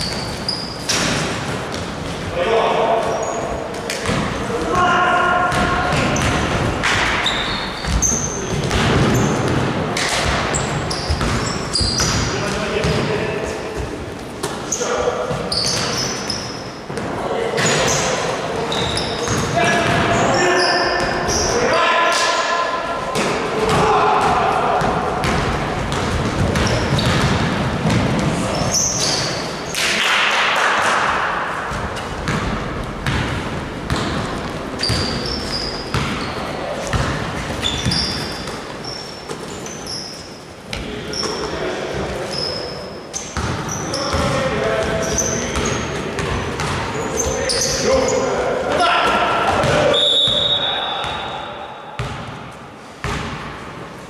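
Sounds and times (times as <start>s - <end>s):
shoe squeaks: 0.0s - 1.0s, 3.1s - 3.6s, 7.1s - 9.4s, 10.5s - 12.3s, 14.6s - 16.9s, 17.6s - 21.6s, 26.6s - 27.2s, 28.5s - 29.8s, 34.8s - 36.6s, 37.5s - 40.5s, 41.1s - 41.6s, 42.2s - 44.2s, 45.0s - 45.9s, 46.9s - 48.3s, 49.9s - 51.5s
echoing hall noise: 0.0s - 54.0s
basketball bouncing on a court: 5.4s - 13.1s, 23.7s - 28.4s, 31.7s - 38.8s, 43.4s - 47.3s, 52.0s - 53.5s.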